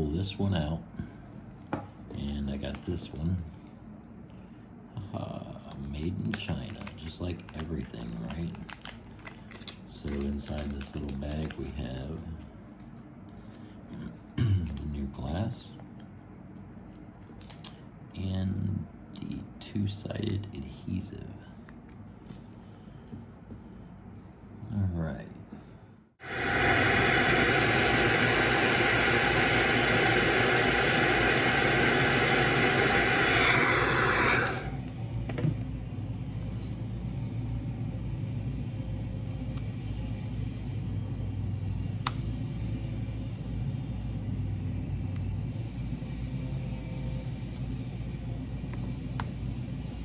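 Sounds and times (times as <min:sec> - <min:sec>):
hair dryer running: 0:26.2 - 0:35.5.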